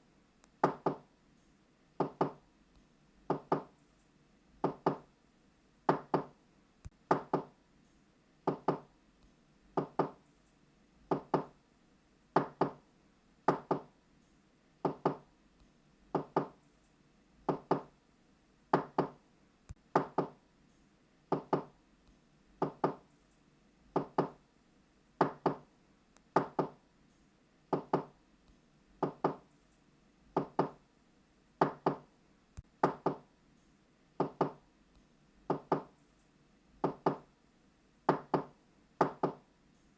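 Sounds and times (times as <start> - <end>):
knocking on a door: 0.6 - 1.0, 2.0 - 2.4, 3.3 - 3.7, 4.6 - 5.0, 5.9 - 6.3, 7.1 - 7.5, 8.5 - 8.9, 9.8 - 10.2, 11.1 - 11.5, 12.4 - 12.8, 13.5 - 13.9, 14.8 - 15.2, 16.1 - 16.6, 17.5 - 17.9, 18.7 - 19.2, 20.0 - 20.4, 21.3 - 21.7, 22.6 - 23.0, 24.0 - 24.4, 25.2 - 25.6, 26.4 - 26.8, 27.7 - 28.1, 29.0 - 29.4, 30.4 - 30.8, 31.6 - 32.0, 32.8 - 33.2, 34.2 - 34.6, 35.5 - 35.9, 36.8 - 37.3, 38.1 - 39.4.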